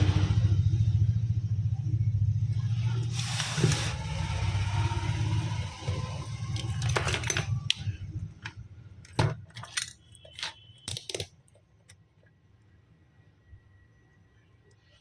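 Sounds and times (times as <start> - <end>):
low hum: 0.0 - 9.8
small hard objects clicking: 9.6 - 11.4.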